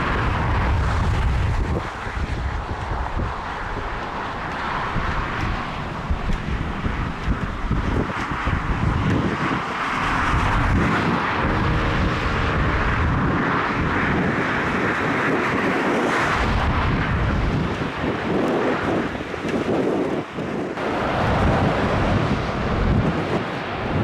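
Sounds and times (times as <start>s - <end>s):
jet airliner passing: 0.0s - 24.0s
wind buffeting microphone: 0.0s - 24.0s.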